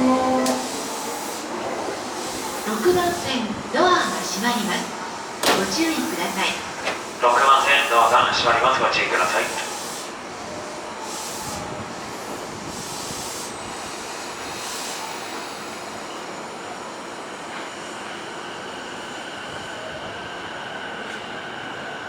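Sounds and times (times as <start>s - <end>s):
train motor whine: 0.0s - 3.3s.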